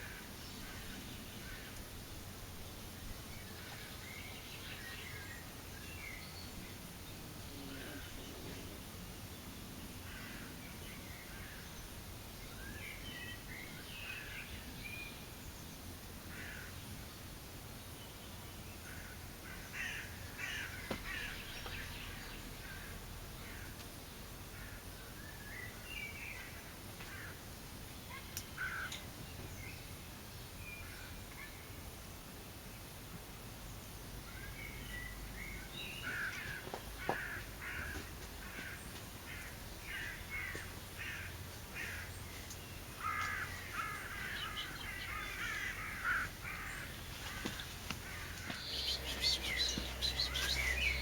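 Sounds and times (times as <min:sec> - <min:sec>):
faint outdoor background noise: 0:00.0 - 0:51.0
songbirds chirping and singing: 0:20.6 - 0:23.7, 0:34.4 - 0:51.0.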